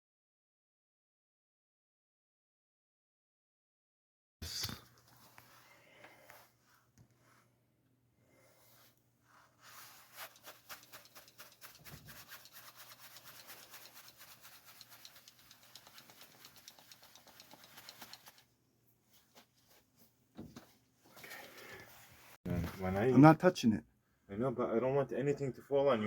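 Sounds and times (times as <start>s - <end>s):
brush scrubbing: 9.3s - 18.4s.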